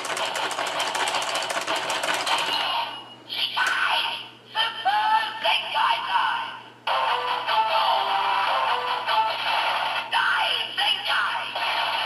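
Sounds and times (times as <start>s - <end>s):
toy rattling clicking effect: 0.0s - 2.6s.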